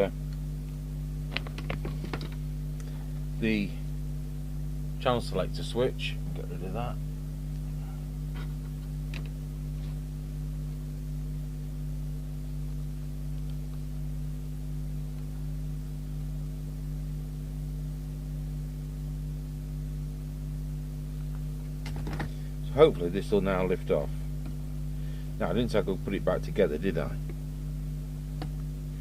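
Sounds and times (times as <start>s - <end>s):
low background hum: 0.0s - 29.0s.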